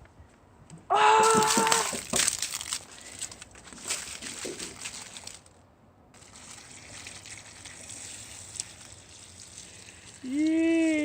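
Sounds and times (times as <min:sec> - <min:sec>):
small knocks: 0:00.7 - 0:02.8
milk splashing and dribbling: 0:06.2 - 0:11.0.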